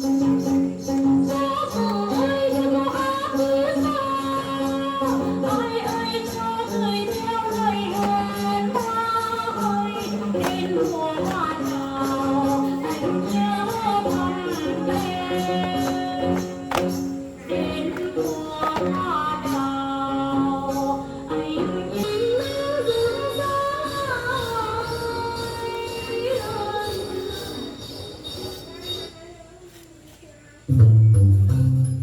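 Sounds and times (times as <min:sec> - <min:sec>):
song with singing and beat: 0:00.0 - 0:28.2.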